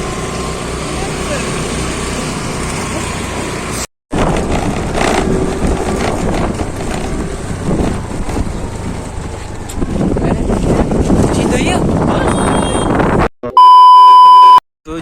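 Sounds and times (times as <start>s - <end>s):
vehicle engine and road noise: 0.0s - 13.3s
wind on microphone: 4.2s - 13.3s.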